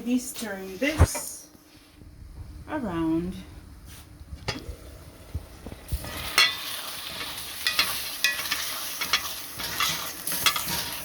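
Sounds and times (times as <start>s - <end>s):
food sizzling in a pan: 5.7s - 11.0s
utensil scraping and knocking pan: 6.2s - 11.0s.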